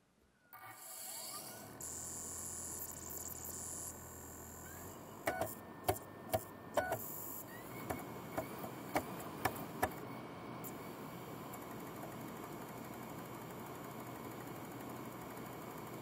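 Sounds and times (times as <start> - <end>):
disc drive mechanism clicking: 5.2 - 10.1.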